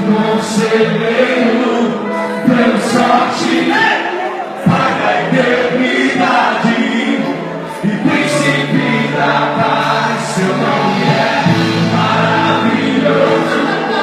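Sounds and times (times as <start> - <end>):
choir singing gospel music: 0.0 - 14.0.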